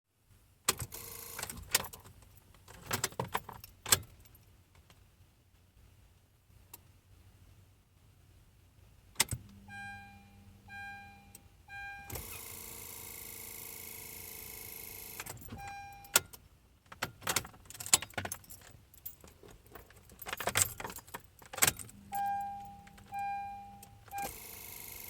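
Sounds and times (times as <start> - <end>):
car keys jangling: 0.8 - 4.4, 14.5 - 25.0
car electronic warning chime: 9.4 - 16.3, 21.9 - 25.0.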